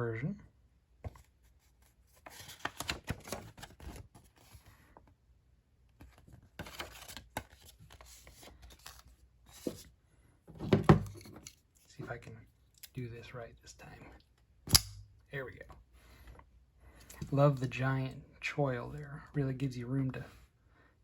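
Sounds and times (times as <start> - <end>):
paper rustling and crinkling: 1.1 - 4.7, 6.0 - 9.9.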